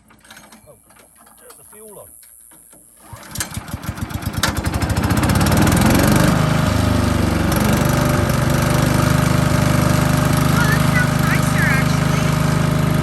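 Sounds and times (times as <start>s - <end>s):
engine starting and running: 2.7s - 13.0s.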